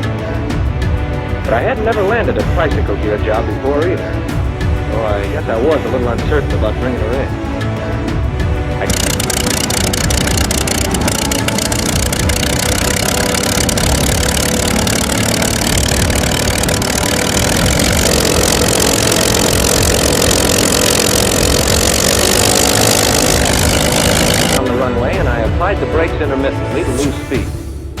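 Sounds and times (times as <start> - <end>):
propeller plane engine: 6.2 - 24.7
steady hum: 8.8 - 24.6.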